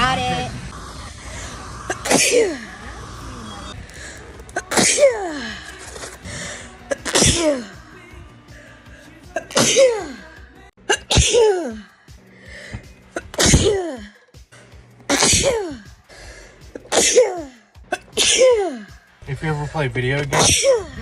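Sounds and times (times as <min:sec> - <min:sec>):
woman sneezing: 0:01.9 - 0:02.7, 0:04.6 - 0:05.6, 0:06.9 - 0:07.8, 0:09.4 - 0:10.2, 0:10.9 - 0:11.8, 0:13.2 - 0:14.2, 0:15.1 - 0:15.9, 0:16.8 - 0:19.0, 0:20.3 - 0:21.0.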